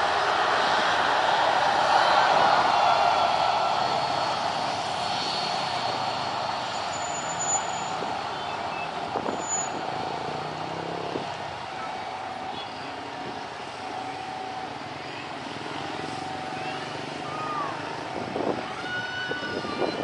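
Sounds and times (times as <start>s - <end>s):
engine rushing past: 9.1s - 11.4s.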